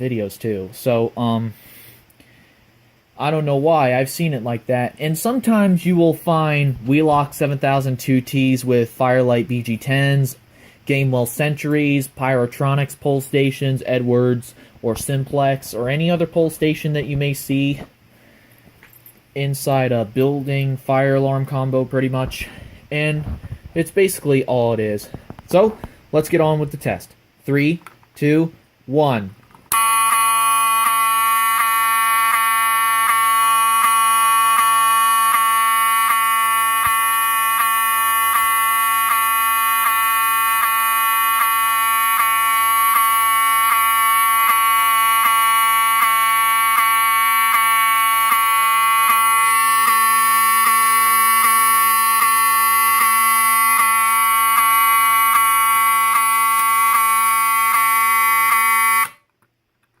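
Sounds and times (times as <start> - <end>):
loud alarm horn tone: 29.7 - 59.2.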